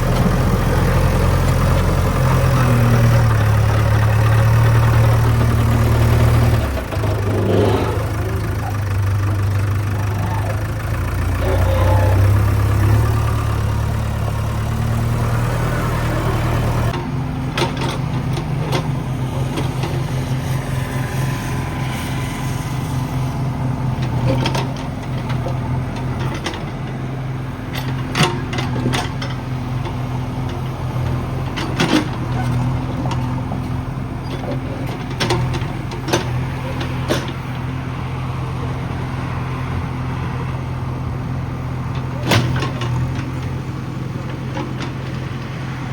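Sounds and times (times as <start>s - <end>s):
diesel engine running: 0.0s - 45.9s.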